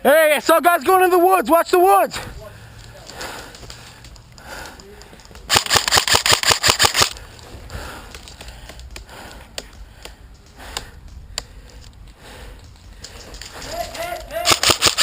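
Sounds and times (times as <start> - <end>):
airsoft rifle shots: 5.5 - 7.2, 14.4 - 15.0.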